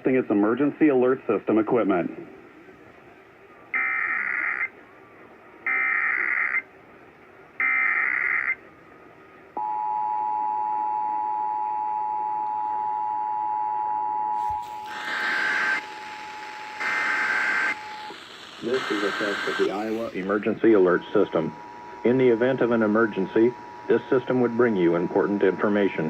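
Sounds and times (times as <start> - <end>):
digital header data bursts: 14.4 - 26.0.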